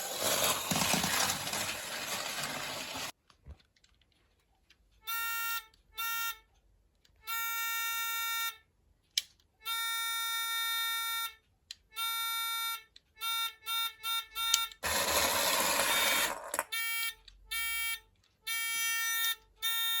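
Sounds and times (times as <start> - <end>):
toy train horn toots: 5.0 - 6.5, 7.2 - 8.7, 9.6 - 20.0.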